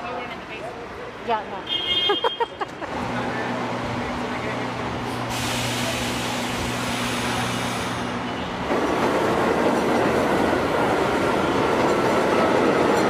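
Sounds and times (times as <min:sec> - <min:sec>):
train rumbling past: 0:02.9 - 0:13.0.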